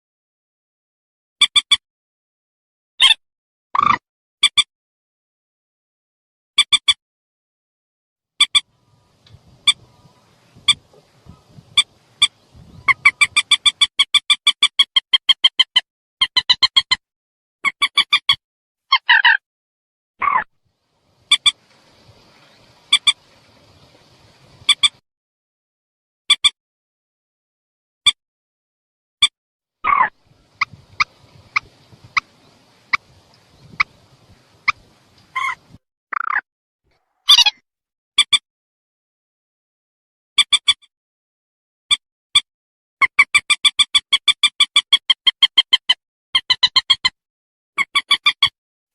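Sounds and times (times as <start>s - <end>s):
rail bird calls: 8.4s - 13.9s, 20.2s - 25.0s, 29.9s - 36.4s.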